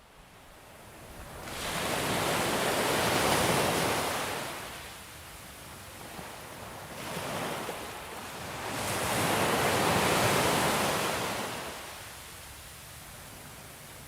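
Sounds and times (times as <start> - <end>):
ocean waves breaking on beach: 1.1 - 5.0, 5.9 - 12.3.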